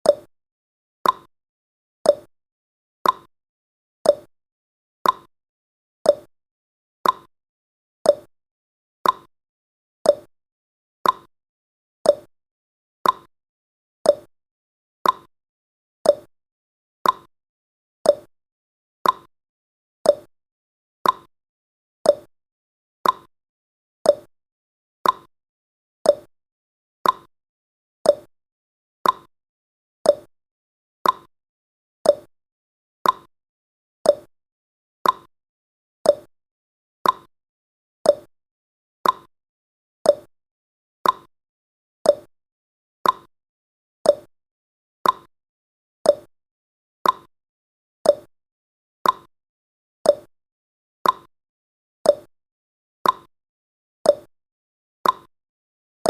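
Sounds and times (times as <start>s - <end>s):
timer ticking: 1.0s - 1.3s, 2.1s - 2.3s, 3.0s - 3.3s, 4.1s - 4.3s, 5.0s - 5.3s, 6.1s - 6.3s, 7.0s - 7.3s, 8.1s - 8.3s, 9.0s - 9.3s, 10.1s - 10.3s, 11.0s - 11.3s, 12.1s - 12.3s, 13.0s - 13.3s, 14.1s - 14.3s, 15.0s - 15.3s, 16.0s - 16.3s, 17.0s - 17.3s, 18.1s - 18.3s, 19.0s - 19.3s, 20.0s - 20.3s, 21.0s - 21.3s, 22.0s - 22.3s, 23.0s - 23.3s, 24.1s - 24.3s, 25.0s - 25.3s, 26.1s - 26.3s, 27.0s - 27.3s, 28.0s - 28.3s, 29.0s - 29.3s, 30.0s - 30.3s, 31.0s - 31.3s, 32.0s - 32.3s, 33.0s - 33.3s, 34.0s - 34.3s, 35.0s - 35.3s, 36.0s - 36.3s, 37.0s - 37.3s, 38.0s - 38.3s, 39.0s - 39.3s, 40.1s - 40.3s, 41.0s - 41.3s, 42.0s - 42.3s, 43.0s - 43.3s, 44.1s - 44.3s, 45.0s - 45.3s, 46.1s - 46.3s, 47.0s - 47.3s, 48.0s - 48.3s, 49.0s - 49.3s, 50.1s - 50.3s, 51.0s - 51.3s, 52.1s - 52.3s, 53.0s - 53.3s, 54.1s - 54.3s, 55.0s - 55.3s.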